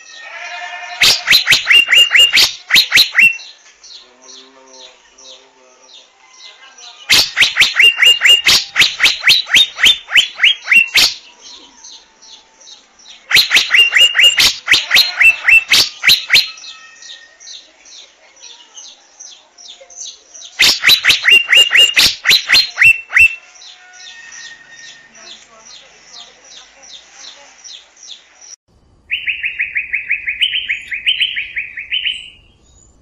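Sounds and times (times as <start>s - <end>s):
bird calling sharp notes: 0.0s - 3.6s, 7.1s - 11.4s, 13.2s - 17.7s, 20.5s - 25.4s, 29.1s - 32.6s
quick bird chirps: 1.0s - 3.5s, 7.1s - 11.2s, 13.3s - 16.7s, 20.5s - 23.4s.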